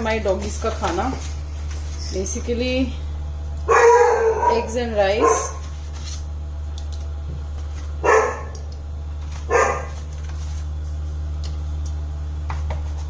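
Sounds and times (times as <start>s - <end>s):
steady low hum: 0.0s - 13.0s
dog barking: 3.7s - 5.6s, 8.0s - 8.6s, 9.5s - 10.0s.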